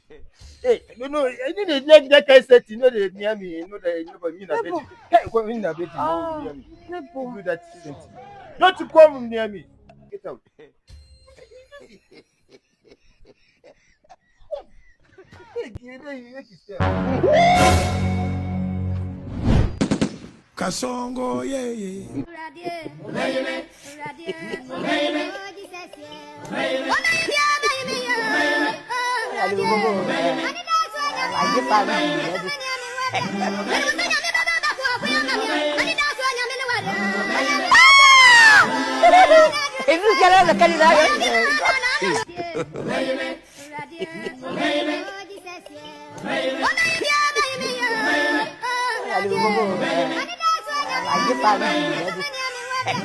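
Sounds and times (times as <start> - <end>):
music: 16.8 - 19.4.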